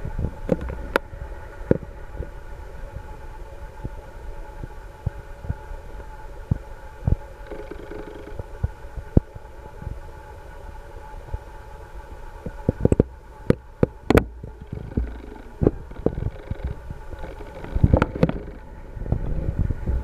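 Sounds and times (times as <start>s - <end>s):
low rumble: 0.0s - 5.8s, 6.4s - 20.0s
irregular thumps and clicks: 12.9s - 18.6s.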